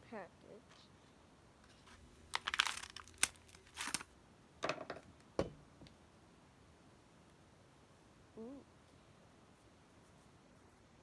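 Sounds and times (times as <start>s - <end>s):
plastic packet crinkling: 1.9s - 4.1s
scissors cutting plastic: 2.3s - 4.1s.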